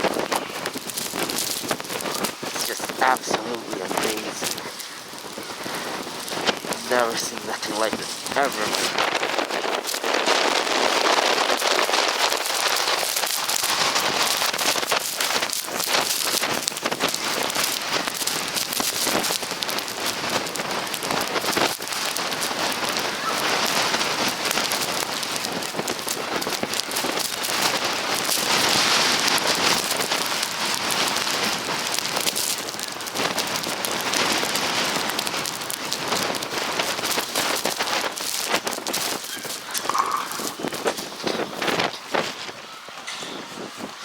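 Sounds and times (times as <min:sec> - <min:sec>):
blizzard wind with blowing snow: 0:00.0 - 0:44.0.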